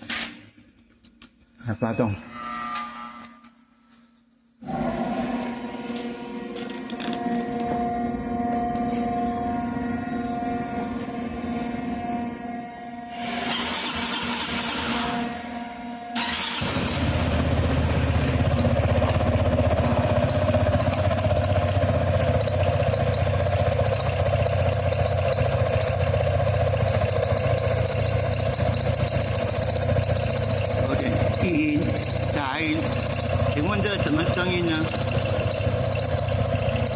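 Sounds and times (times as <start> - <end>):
scooter engine cranking: 16.2 - 36.9
scooter engine idling: 16.2 - 36.9.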